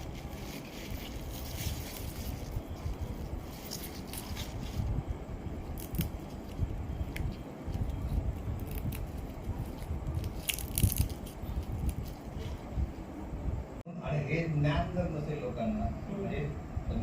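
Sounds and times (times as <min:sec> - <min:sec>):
vegetable stems snapping and crunching: 0:00.0 - 0:04.9, 0:05.7 - 0:12.6
low rumbling background: 0:00.0 - 0:17.0.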